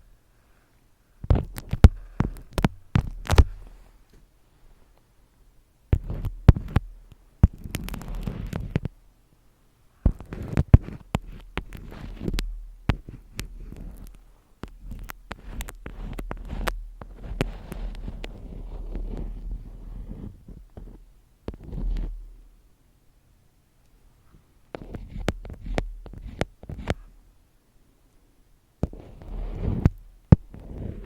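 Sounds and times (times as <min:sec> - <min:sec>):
sharp taps and clicks: 0:01.2 - 0:03.5
scratchy rustling: 0:01.3 - 0:04.1, 0:06.0 - 0:08.9, 0:10.0 - 0:22.4, 0:24.2 - 0:27.2, 0:28.8 - 0:31.0.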